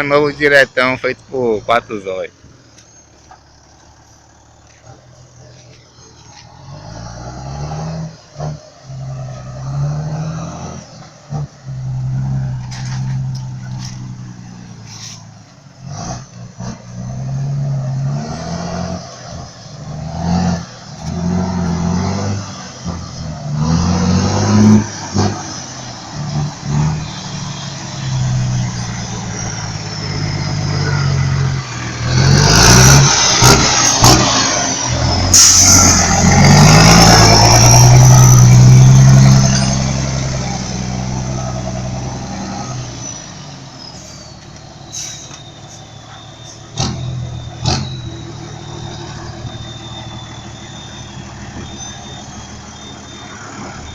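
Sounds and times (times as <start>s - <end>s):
diesel truck engine revving: 0.0s - 53.9s
high whistle: 34.5s - 39.7s, 43.8s - 53.9s.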